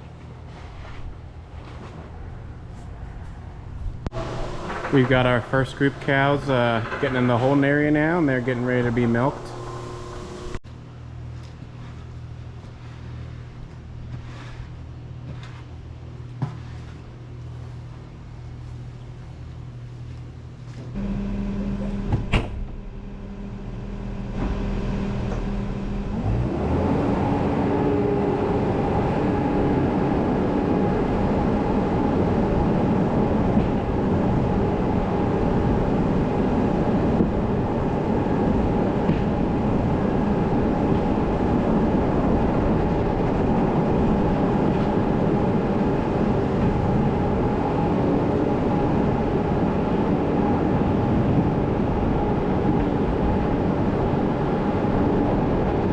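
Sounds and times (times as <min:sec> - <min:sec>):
loud machinery running: 0:04.1 - 0:10.6, 0:21.0 - 0:55.9.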